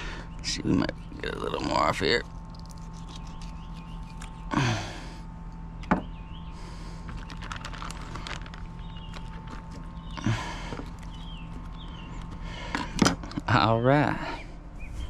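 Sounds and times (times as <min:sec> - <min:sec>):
steady hum: 0:00.0 - 0:15.0
knife scraping fish: 0:00.9 - 0:04.4
faint chirping: 0:06.0 - 0:12.7.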